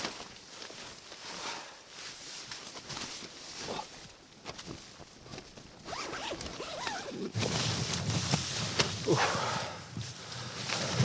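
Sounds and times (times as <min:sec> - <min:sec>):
nylon fabric rustling: 0:00.0 - 0:11.0
zipper pulled: 0:05.9 - 0:08.0.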